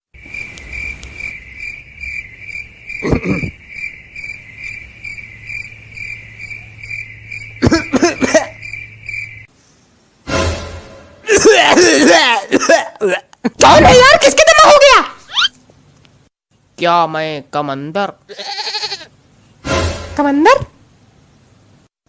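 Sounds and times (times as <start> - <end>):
crickets chirping: 0.1 - 10.3
person coughing: 3.0 - 3.6, 7.6 - 8.6, 11.2 - 13.3.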